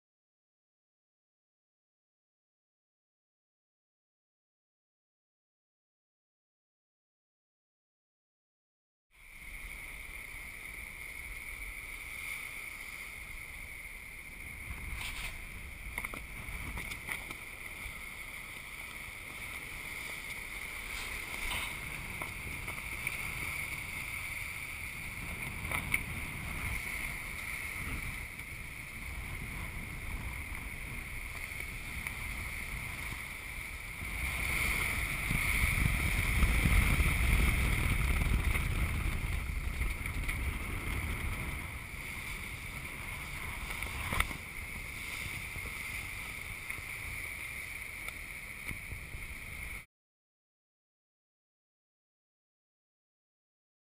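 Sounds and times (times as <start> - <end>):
wind: 9.1 - 49.9
steady high whine: 9.2 - 49.8
water rushing along hull: 9.2 - 49.8.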